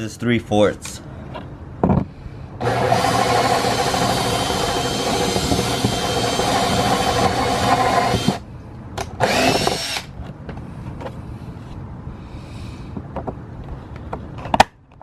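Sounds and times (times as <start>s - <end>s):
power drill whirring: 2.6s - 8.4s, 9.2s - 10.1s.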